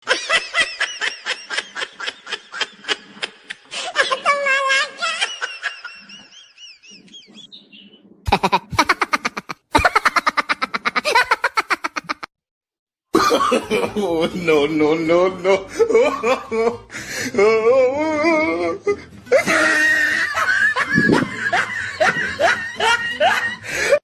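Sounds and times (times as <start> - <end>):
high-pitched laughing: 8.3 - 12.3, 18.0 - 23.7.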